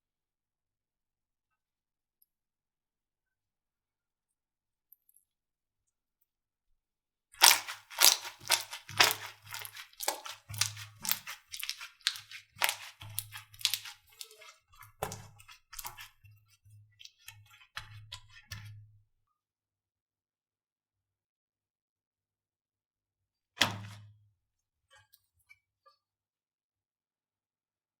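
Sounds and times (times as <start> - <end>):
slime crackling pops: 7.4 - 14.3.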